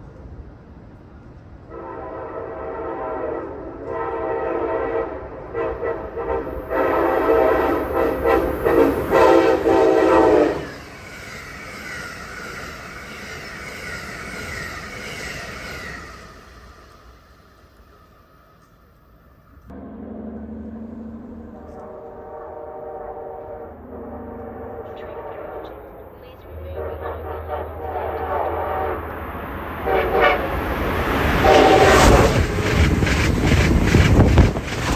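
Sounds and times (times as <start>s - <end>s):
train rushing past: 0.0s - 34.9s
train air horn blasts: 1.7s - 10.8s, 19.7s - 26.0s, 26.6s - 29.2s, 29.8s - 32.8s.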